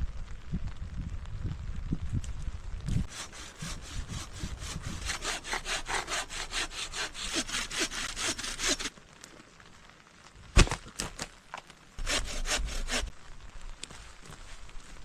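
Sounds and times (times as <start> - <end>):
hand saw cutting wood: 3.1 - 8.9, 12.0 - 13.1.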